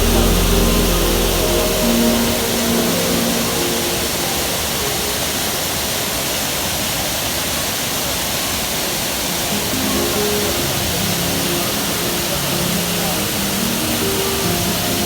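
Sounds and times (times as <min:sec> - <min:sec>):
faint background music: 0:00.0 - 0:05.7
waterfall rushing: 0:00.0 - 0:15.0.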